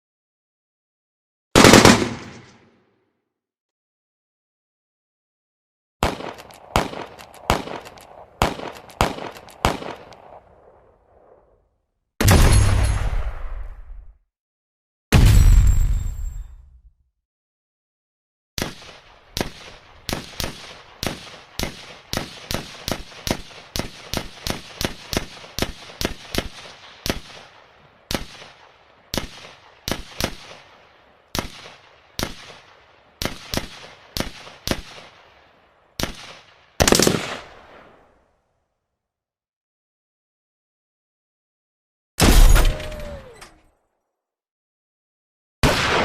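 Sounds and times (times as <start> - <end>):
pistol shots: 1.6 - 2.6, 6.0 - 10.4, 18.6 - 30.8, 36.0 - 37.8, 45.6 - 46.0.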